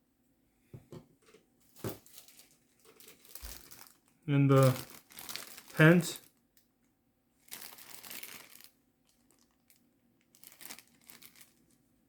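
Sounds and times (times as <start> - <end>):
plastic crinkling: 1.7 - 6.7, 7.4 - 11.8.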